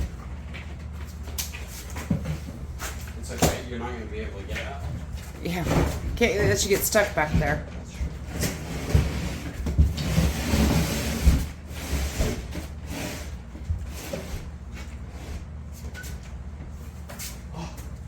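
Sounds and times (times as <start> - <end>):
wood scraping and rubbing: 8.2 - 15.3.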